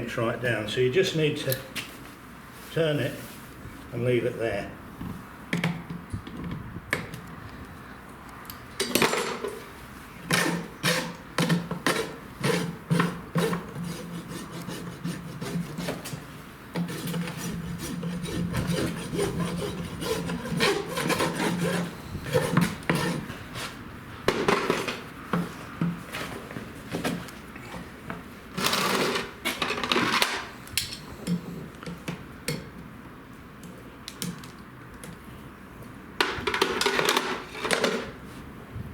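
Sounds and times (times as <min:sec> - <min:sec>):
rasp scraping hoof: 0:10.3 - 0:23.8.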